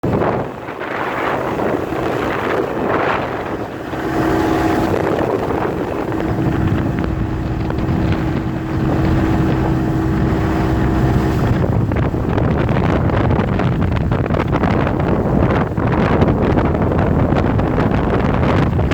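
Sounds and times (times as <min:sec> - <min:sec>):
motorboat engine running: 0:00.0 - 0:18.9
wind buffeting microphone: 0:00.0 - 0:18.9
steady whine: 0:00.6 - 0:12.4.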